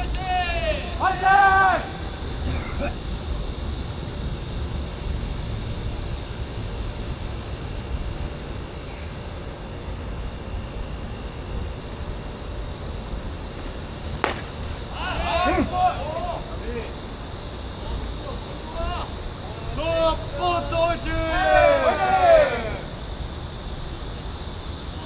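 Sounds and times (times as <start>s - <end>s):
insect chirping high ticks: 0.9s - 21.2s, 22.9s - 25.0s
steady low rumble: 9.2s - 18.6s
sharp crack: 14.1s - 15.3s.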